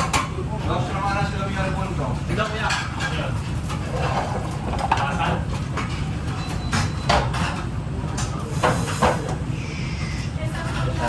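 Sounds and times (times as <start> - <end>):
pans and dishes clattering: 2.3 - 9.4.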